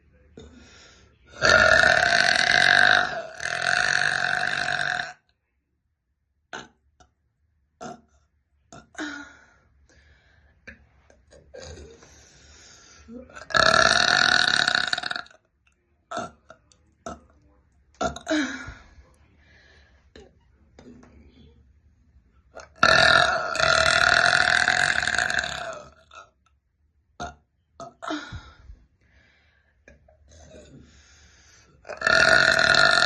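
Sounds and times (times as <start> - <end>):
person burping: 1.3 - 5.2, 6.5 - 6.8, 7.8 - 9.4, 11.3 - 12.0, 13.3 - 15.4, 16.1 - 17.3, 18.0 - 18.8, 22.6 - 26.3, 27.2 - 28.5, 29.9 - 30.9, 31.8 - 33.0
person breathing: 9.0 - 11.0, 11.9 - 13.2, 18.4 - 20.2, 28.1 - 29.8, 30.7 - 31.8.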